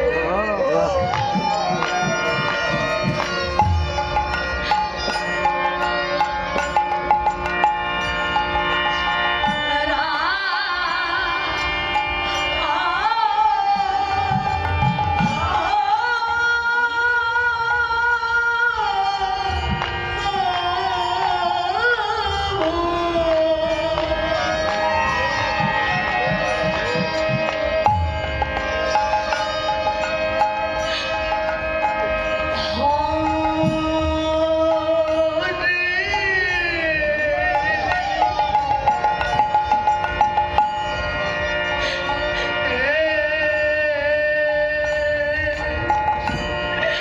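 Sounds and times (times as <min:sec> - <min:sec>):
hand drum beats: 0:00.0 - 0:08.8, 0:13.8 - 0:15.8, 0:22.6 - 0:35.3
held chords: 0:00.0 - 0:16.3, 0:19.4 - 0:47.0.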